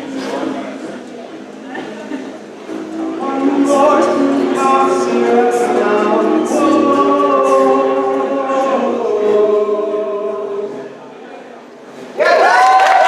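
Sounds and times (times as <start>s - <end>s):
vocal group singing in harmony: 2.7s - 11.1s.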